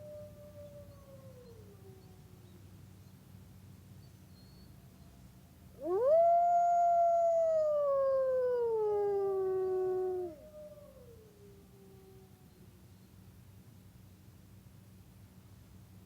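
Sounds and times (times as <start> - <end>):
dog howling: 5.8 - 11.2.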